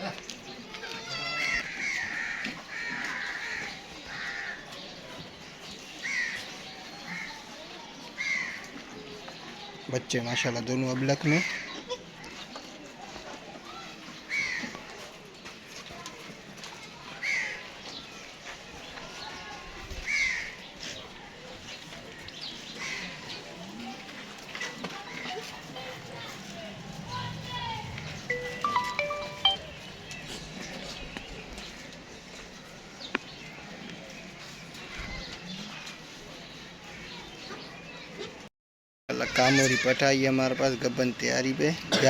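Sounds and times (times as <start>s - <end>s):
faint background voices: 0.0s - 38.5s.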